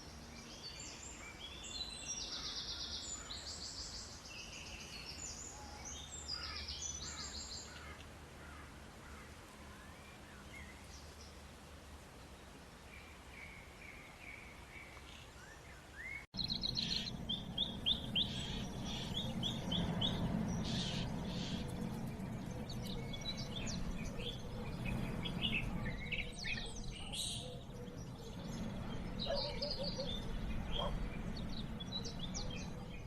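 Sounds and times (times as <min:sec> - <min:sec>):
low steady background noise: 0:00.0 - 0:33.0
small birds chirping: 0:13.4 - 0:33.0.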